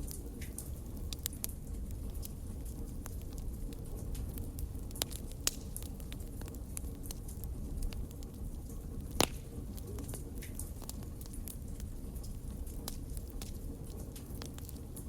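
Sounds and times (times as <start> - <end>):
wood fire crackling: 0.0 - 15.0
sharp pop of fire: 9.2 - 9.6.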